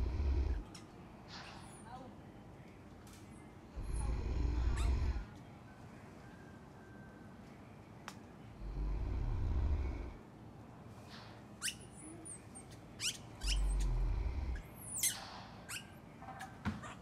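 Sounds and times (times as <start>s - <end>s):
monkey snoring: 0.0s - 0.7s, 3.8s - 5.3s, 8.6s - 10.2s, 13.4s - 14.6s.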